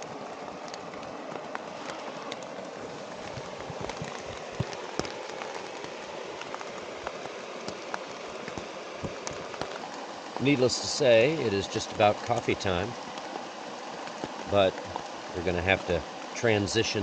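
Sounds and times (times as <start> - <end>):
raindrops tapping sharply: 0.0 - 17.0
steady rain falling: 0.0 - 17.0.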